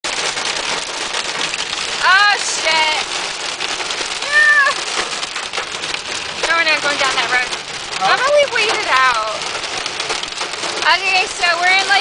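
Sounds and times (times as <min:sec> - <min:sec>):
hail pelting a truck roof: 0:00.0 - 0:12.0
voice exclamations: 0:04.2 - 0:04.8.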